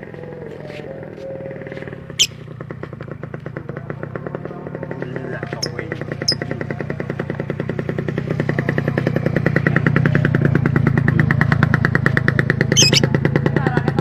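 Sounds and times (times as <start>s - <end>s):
small engine running: 1.3s - 14.0s
bird chirp: 2.1s - 2.4s, 12.7s - 13.1s.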